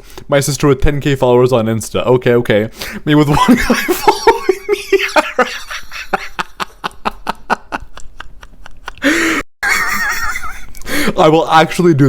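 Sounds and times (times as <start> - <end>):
man wheezing with laughter: 8.8 - 11.1.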